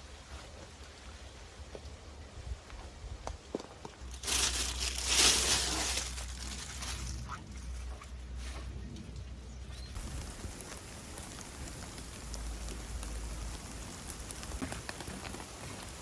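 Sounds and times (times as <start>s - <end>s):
steady rain falling: 9.9s - 16.0s.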